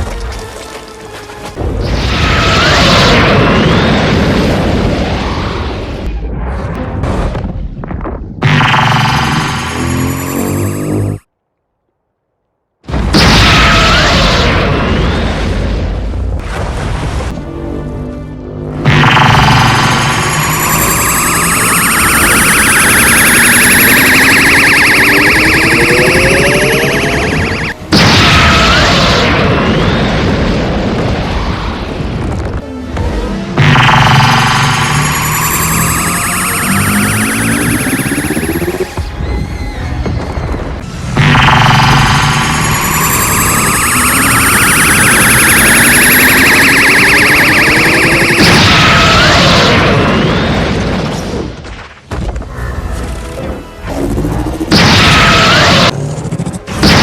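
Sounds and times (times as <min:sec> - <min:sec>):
energy beam blast: 0:08.4 - 0:11.2, 0:18.9 - 0:30.4, 0:33.6 - 0:39.0, 0:41.2 - 0:50.2
pulsing charge-up whine: 0:08.4 - 0:11.3, 0:18.9 - 0:27.9, 0:33.6 - 0:39.1, 0:41.2 - 0:49.9
explosion: 0:27.9 - 0:32.6.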